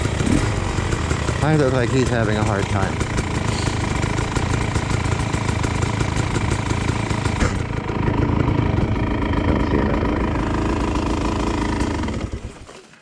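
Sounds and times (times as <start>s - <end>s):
motorcycle engine running: 0.0s - 12.8s.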